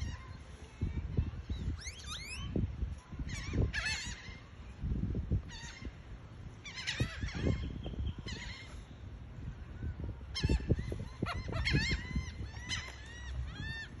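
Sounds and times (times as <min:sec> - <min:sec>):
high-pitched bird calls: 0:01.5 - 0:02.6, 0:03.2 - 0:04.6, 0:06.6 - 0:09.0, 0:10.3 - 0:14.0.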